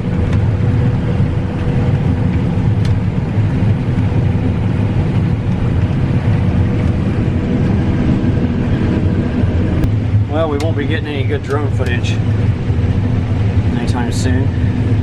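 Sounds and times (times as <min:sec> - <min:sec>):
combine harvester droning: 0:00.0 - 0:15.0
faint steady whine: 0:00.0 - 0:15.0.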